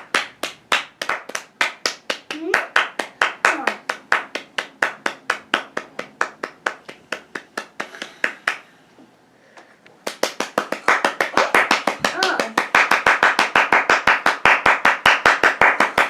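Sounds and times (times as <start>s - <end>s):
hands clapping fast: 0.0s - 8.7s, 10.0s - 16.0s.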